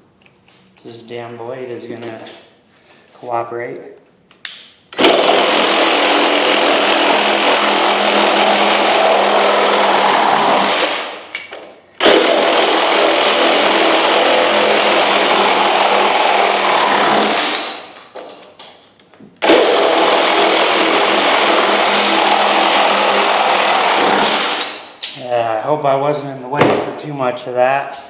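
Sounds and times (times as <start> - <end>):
reciprocating saw cutting: 5.0 - 11.1, 12.0 - 17.8, 19.4 - 24.8.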